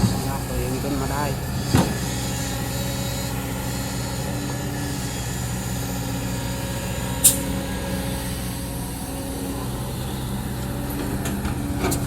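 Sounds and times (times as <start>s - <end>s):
diesel truck engine running: 0.0s - 12.0s
air brake hiss: 7.2s - 7.4s.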